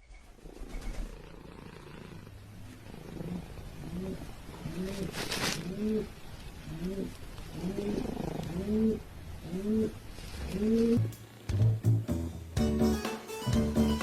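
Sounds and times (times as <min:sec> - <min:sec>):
animal cooing calls: 0:00.4 - 0:11.0
hissing rustle: 0:00.4 - 0:11.0.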